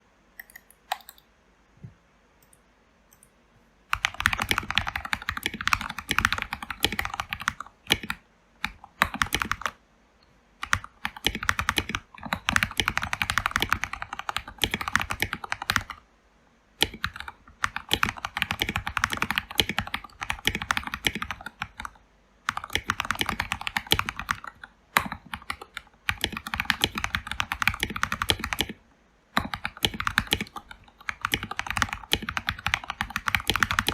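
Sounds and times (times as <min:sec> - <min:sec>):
typing on mechanical keyboard: 0:03.9 - 0:09.8, 0:10.6 - 0:16.0, 0:16.8 - 0:28.8, 0:29.4 - 0:33.9.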